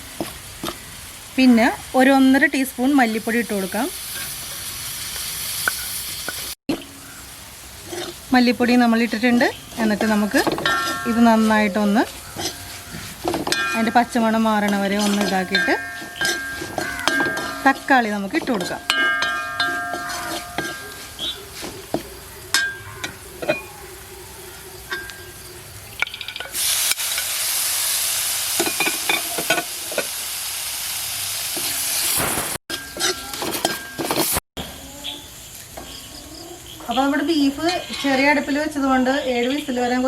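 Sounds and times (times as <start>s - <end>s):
loud sizzle of frying: 0.0s - 40.0s
spoon clinking against a pan: 10.0s - 23.8s, 24.9s - 25.4s, 28.6s - 29.7s, 32.7s - 34.2s.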